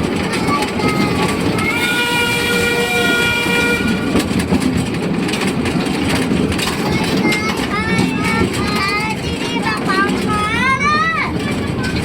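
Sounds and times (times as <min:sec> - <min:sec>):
train rumble and rail clatter: 0:00.0 - 0:12.0
steam whistle blast: 0:01.8 - 0:04.0.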